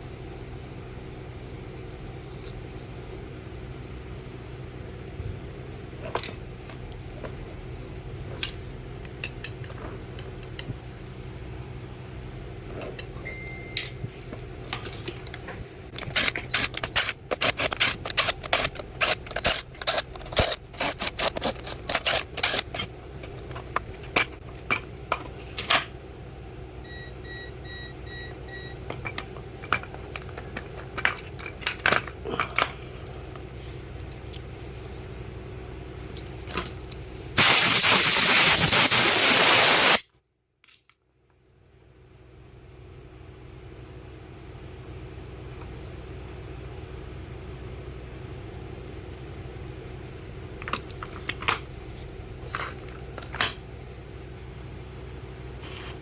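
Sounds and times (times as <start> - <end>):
steady low hum: 0.0 - 39.0.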